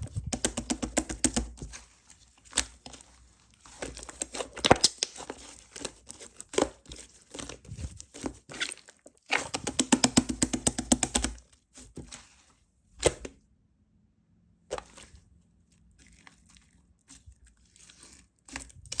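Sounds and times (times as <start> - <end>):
slime squishing and popping: 3.7 - 11.4.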